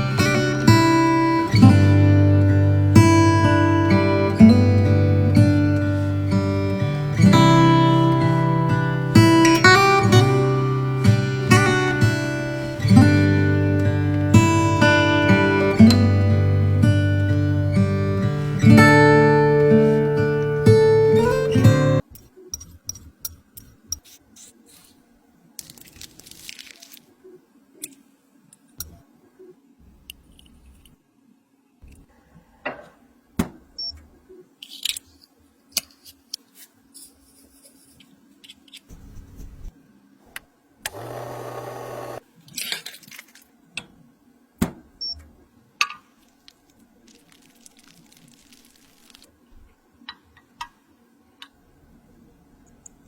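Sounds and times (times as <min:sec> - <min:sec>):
guitar music: 0:00.0 - 0:22.0
soft crunching and scraping: 0:22.2 - 0:28.7, 0:34.6 - 0:39.8.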